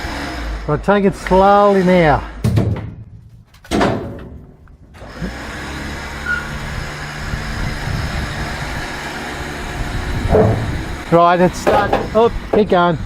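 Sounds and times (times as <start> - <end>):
winch running: 4.9 - 13.0.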